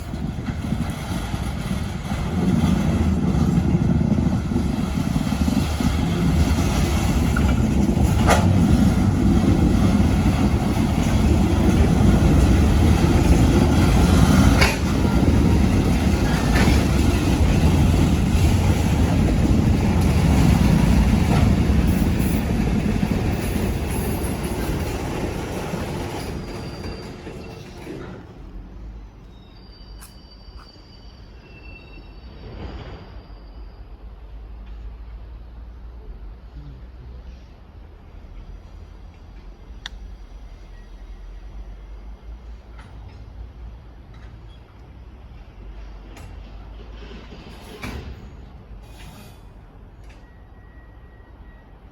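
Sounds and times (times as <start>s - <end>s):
rolling train wheels: 0.0s - 36.5s, 37.3s - 51.9s
diesel locomotive engine: 0.0s - 51.9s.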